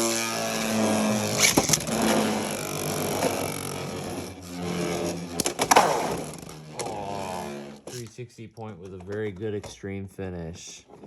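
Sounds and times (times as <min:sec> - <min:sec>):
spinning tops whirring and grinding: 0:00.0 - 0:08.2.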